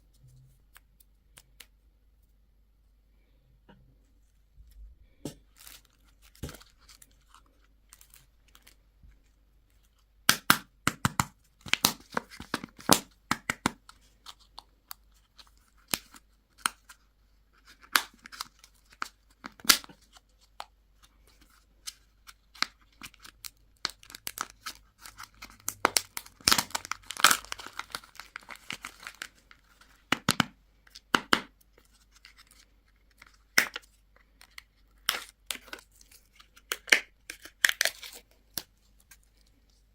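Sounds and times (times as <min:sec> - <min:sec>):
wrappers crinkling: 0:23.0 - 0:30.0.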